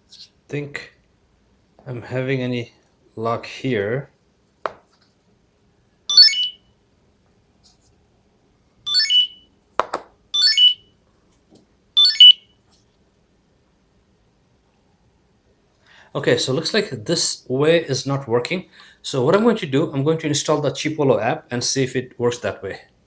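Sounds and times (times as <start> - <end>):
high-pitched electronic jingles: 6.1 - 6.6, 8.9 - 9.4, 10.4 - 10.8, 12.0 - 12.4.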